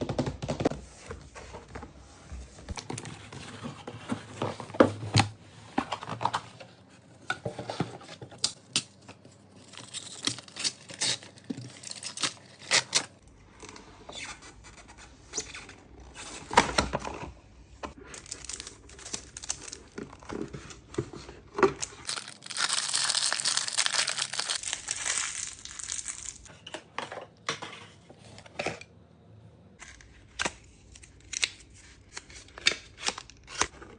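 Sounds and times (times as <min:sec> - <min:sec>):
paper and plastic tearing: 0:21.7 - 0:26.5.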